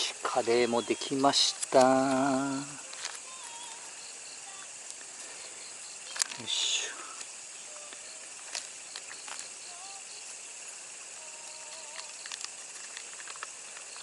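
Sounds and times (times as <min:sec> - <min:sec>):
crickets and insects chirping: 0:00.0 - 0:14.0
faint clicks: 0:11.3 - 0:14.0.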